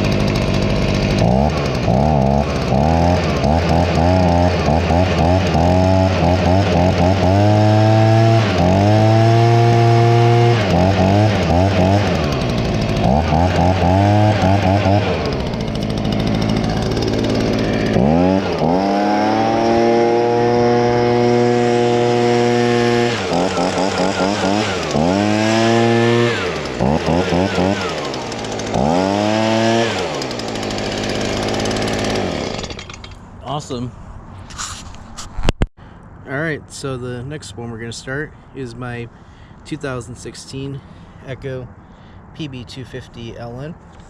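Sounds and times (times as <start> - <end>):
leaf blower engine revving: 0.0 - 33.6.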